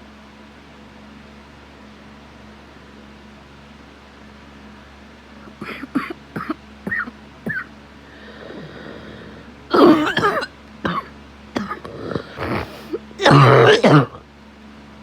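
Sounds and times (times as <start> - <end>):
person coughing: 5.4 - 14.2.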